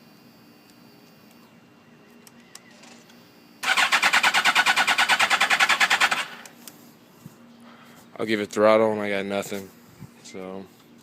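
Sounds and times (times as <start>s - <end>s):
starter motor cranking engine: 3.6s - 6.5s.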